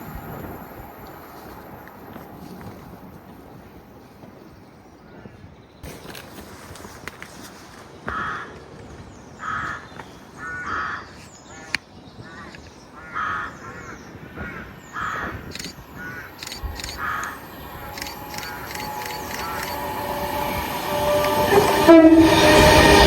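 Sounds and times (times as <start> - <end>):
train rumble: 0.0 - 4.6, 15.5 - 23.0
crow cawing: 17.0 - 17.4.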